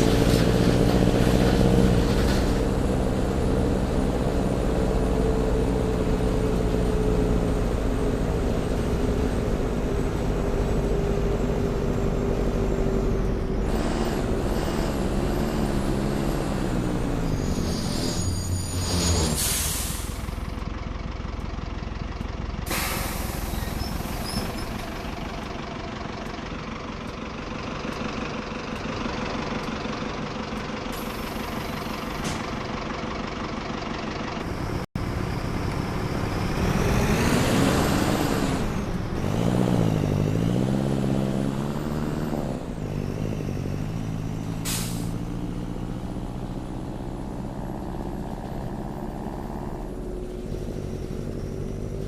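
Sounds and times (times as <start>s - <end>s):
bus diesel engine running: 0.0s - 52.0s
air brake hisses: 19.2s - 20.4s, 22.7s - 24.6s, 44.6s - 45.2s.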